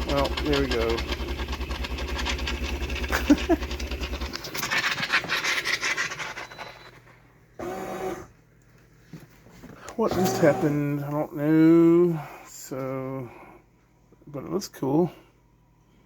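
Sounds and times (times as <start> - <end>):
espresso machine pump buzzing: 0.0 - 4.7, 7.6 - 8.3, 10.0 - 11.0.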